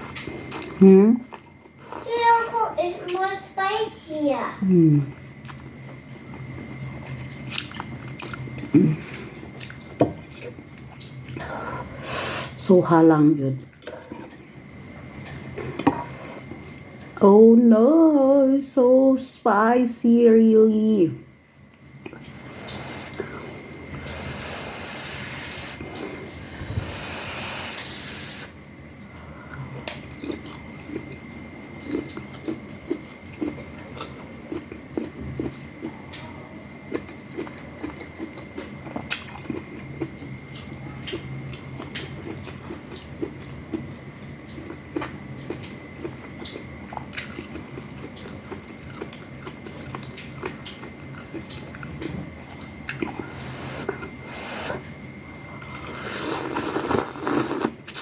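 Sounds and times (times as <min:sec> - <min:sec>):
chewing: 0:05.1 - 0:11.6, 0:21.5 - 0:24.2, 0:28.6 - 0:58.0
noisy slurping: 0:22.1 - 0:28.7, 0:52.9 - 0:55.0, 0:55.7 - 0:58.0.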